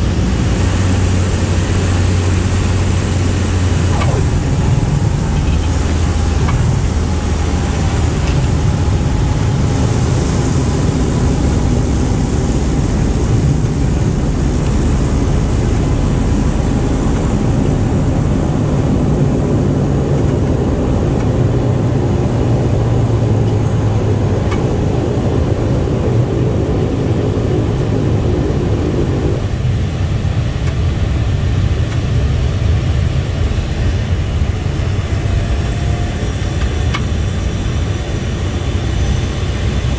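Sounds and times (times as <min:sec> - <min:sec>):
turboprop engine drone: 0:00.0 - 0:39.9.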